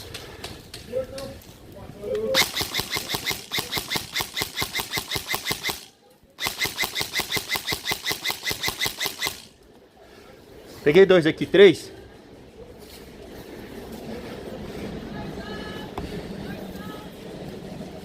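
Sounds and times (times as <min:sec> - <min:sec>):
airsoft gun firing bursts: 0:02.4 - 0:09.5.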